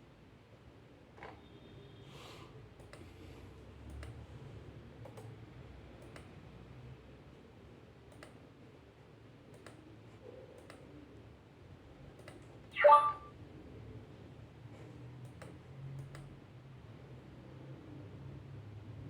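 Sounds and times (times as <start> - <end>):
faint sharp clicks: 2.8 - 3.1, 8.1 - 8.4, 9.5 - 9.8, 12.2 - 12.5.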